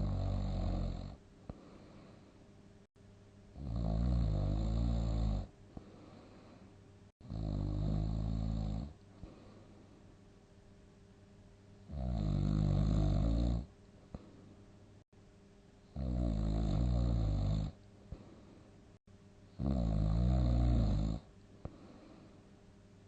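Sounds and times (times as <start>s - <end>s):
person snoring loudly: 0.0s - 1.2s, 3.6s - 5.5s, 7.2s - 9.0s, 11.9s - 13.7s, 16.0s - 17.8s, 19.6s - 21.3s.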